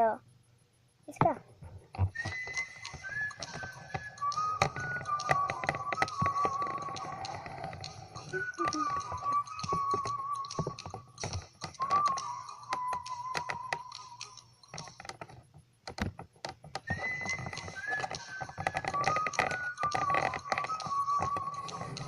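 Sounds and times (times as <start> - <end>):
quick clicks and taps: 1.2 - 22.0
wavering electronic tones: 2.3 - 15.0.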